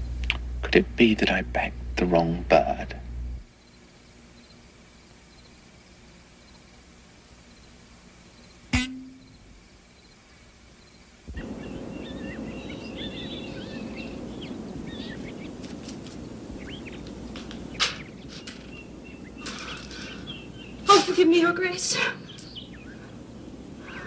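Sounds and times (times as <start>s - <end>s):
outdoor background hiss: 0.0s - 24.0s
birds chirping: 3.5s - 24.0s
sharp knock: 8.8s - 9.4s.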